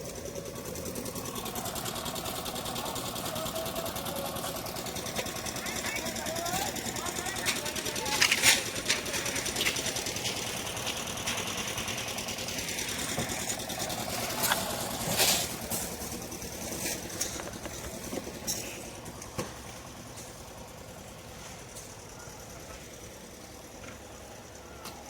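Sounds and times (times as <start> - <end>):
machine engine running: 0.0 - 25.0
knocks and clatter: 13.0 - 20.3.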